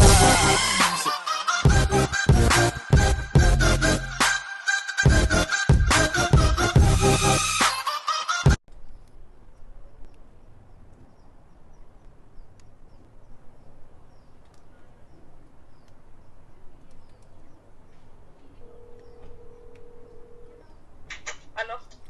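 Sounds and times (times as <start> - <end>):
small birds chirping: 8.7 - 22.0.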